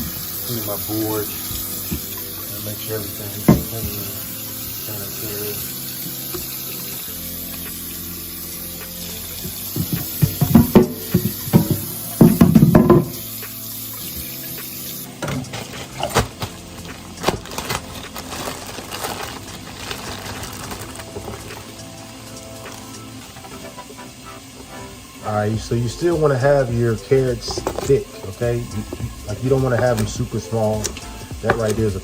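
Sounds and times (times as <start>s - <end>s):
tap running into sink: 0.0s - 7.9s, 8.8s - 21.8s, 25.9s - 32.0s.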